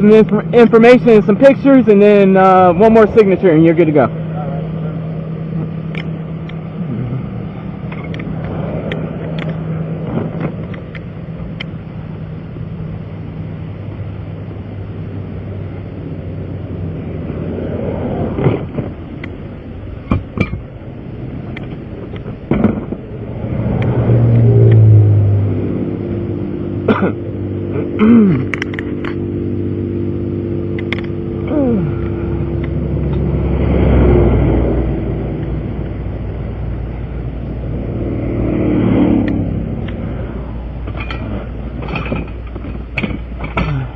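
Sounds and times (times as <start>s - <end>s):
vehicle engine idling: 0.0s - 17.4s, 18.6s - 43.9s
highway traffic passing: 0.0s - 43.9s
tools clanking and knocking: 40.8s - 43.9s.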